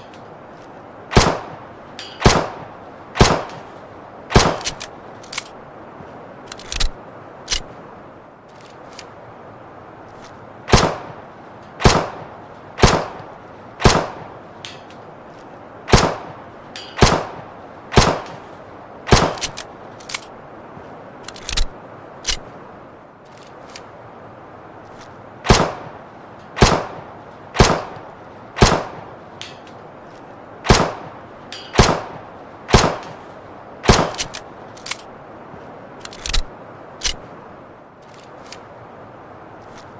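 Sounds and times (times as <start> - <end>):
steady hiss: 0.0 - 39.9
pistol firing single shots: 1.1 - 1.5, 2.2 - 2.6, 3.2 - 3.6, 11.8 - 12.2, 15.9 - 16.3, 26.6 - 27.0, 30.6 - 31.0, 31.7 - 33.2.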